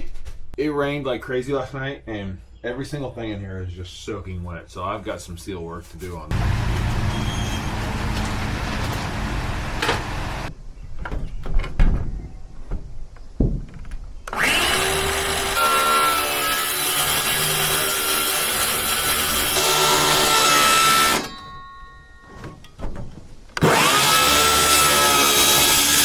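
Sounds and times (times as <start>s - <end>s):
power saw cutting: 6.3s - 10.5s, 14.3s - 21.3s, 23.6s - 26.0s
knocks and handling: 6.3s - 14.1s.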